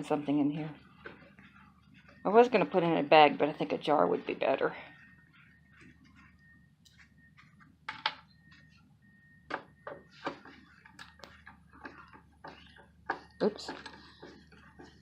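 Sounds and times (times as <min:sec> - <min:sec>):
small hard items clacking: 0:10.2 - 0:15.0.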